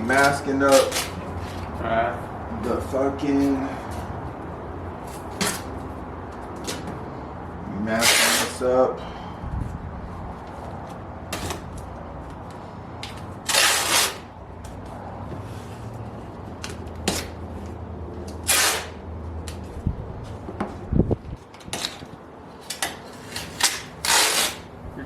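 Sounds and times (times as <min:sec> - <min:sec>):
masking tape ripping off roll: 0:08.0 - 0:08.6, 0:13.4 - 0:14.3, 0:18.4 - 0:19.0, 0:22.7 - 0:24.8.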